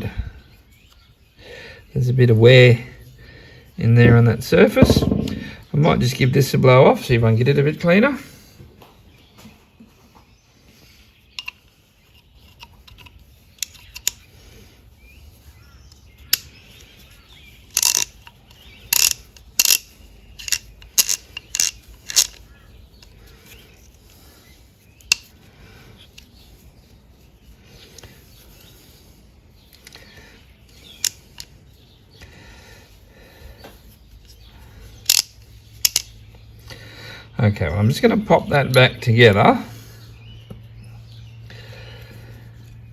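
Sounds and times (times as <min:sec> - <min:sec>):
metallic clicks of small parts: 0:11.4 - 0:11.7, 0:12.4 - 0:14.3, 0:15.9 - 0:24.2, 0:25.0 - 0:25.4, 0:30.7 - 0:31.5, 0:35.0 - 0:36.8.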